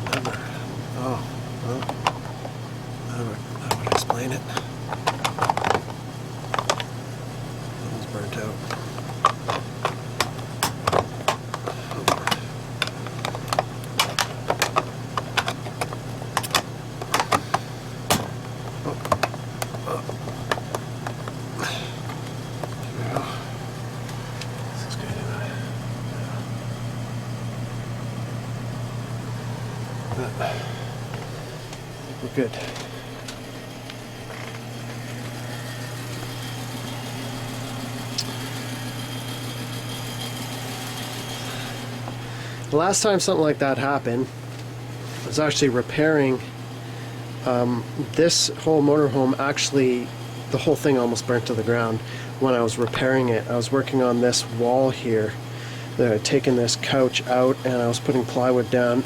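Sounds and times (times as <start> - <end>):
engine idling: 0.0 - 43.2
steady low hum: 0.0 - 59.0.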